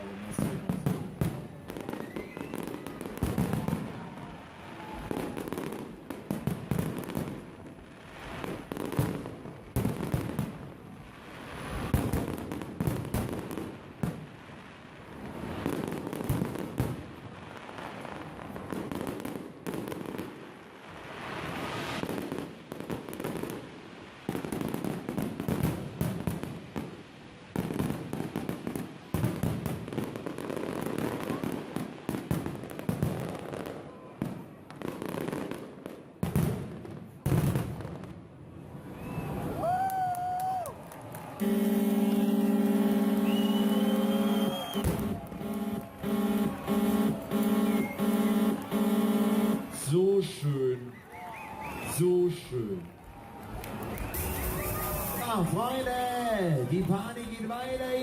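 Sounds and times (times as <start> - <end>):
fireworks bangs and crackling: 0.0 - 58.0.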